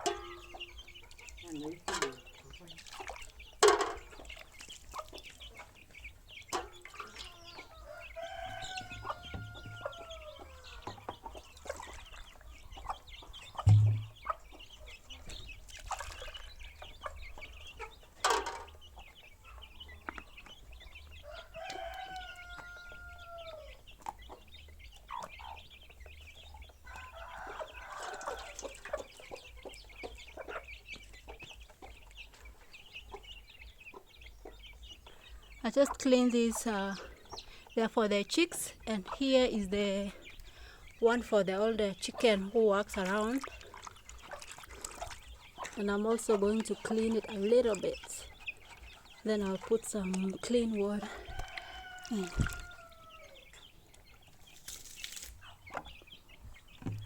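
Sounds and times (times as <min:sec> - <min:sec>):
chickens clucking: 0:00.0 - 0:57.0
rooster crowing: 0:07.4 - 0:10.9, 0:21.2 - 0:23.7, 0:26.8 - 0:28.6, 0:51.2 - 0:53.4
dull thump: 0:13.7 - 0:14.2, 0:56.8 - 0:57.0.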